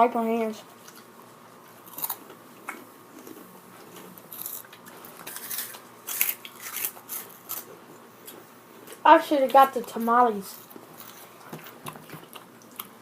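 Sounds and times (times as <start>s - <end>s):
person chewing crunchy snacks: 1.8s - 9.0s, 10.6s - 13.0s.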